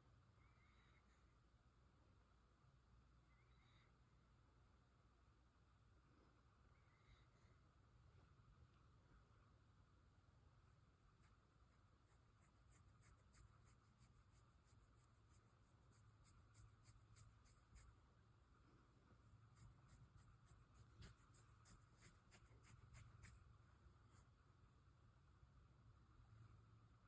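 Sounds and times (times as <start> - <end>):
faint low hum: 0.0 - 27.0
faint clicking or scratching: 11.1 - 18.0, 19.4 - 24.3.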